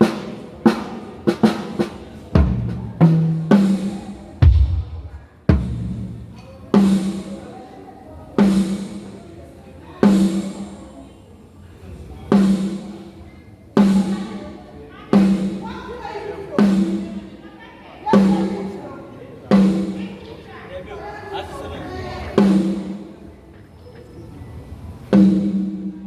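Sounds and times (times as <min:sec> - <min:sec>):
drum strikes ringing out: 0:00.8 - 0:07.2, 0:25.2 - 0:26.0.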